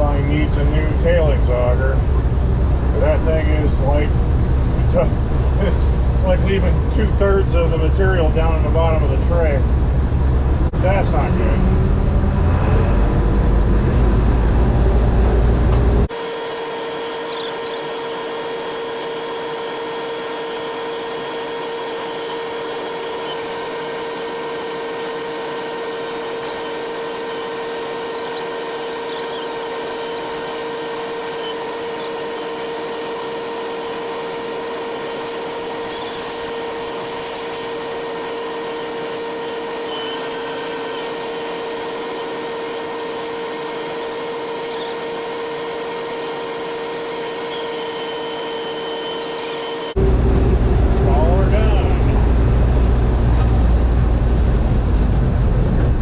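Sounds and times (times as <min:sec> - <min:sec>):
combine harvester humming: 0:00.0 - 0:56.0
faint squeaks: 0:28.0 - 0:30.7, 0:31.3 - 0:32.4, 0:44.6 - 0:45.1.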